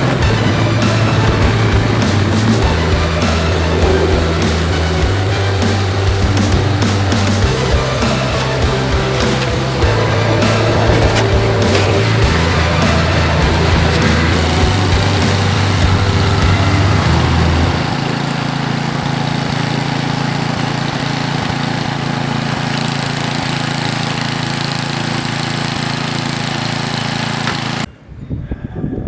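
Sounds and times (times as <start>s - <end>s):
engine running: 0.0s - 27.9s.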